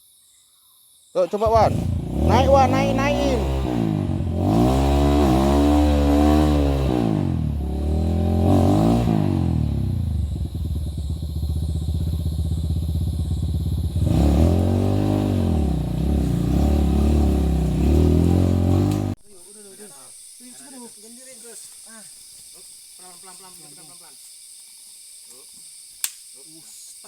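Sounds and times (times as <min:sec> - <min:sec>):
dirt bike engine revving: 0:01.4 - 0:19.2.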